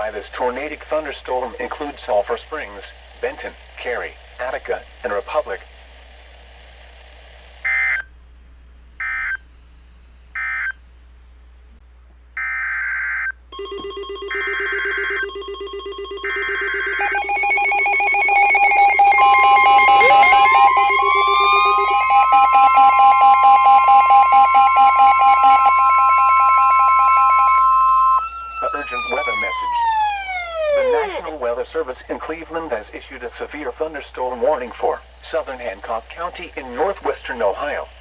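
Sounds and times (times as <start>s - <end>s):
alert tones: 13.6s - 31.3s
siren-like rising sweep: 16.0s - 31.3s.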